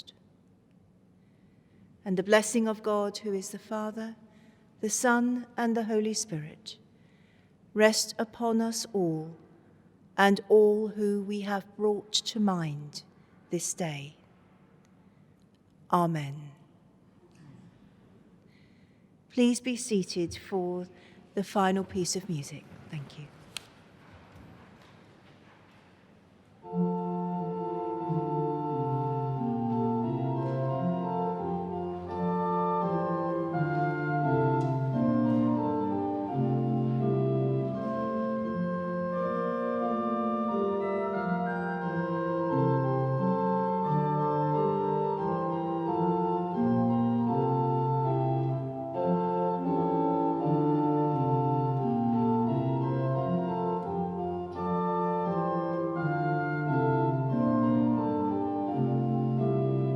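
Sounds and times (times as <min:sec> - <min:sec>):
organ playing full chords: 0:26.6 - 0:59.9.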